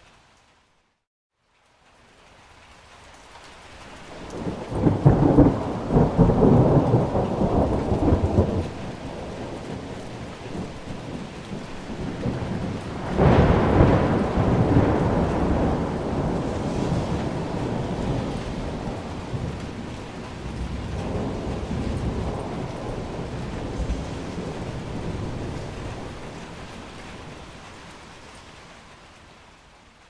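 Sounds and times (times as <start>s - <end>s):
rain hiss: 0.0s - 30.0s
thunder rolling: 4.2s - 27.7s.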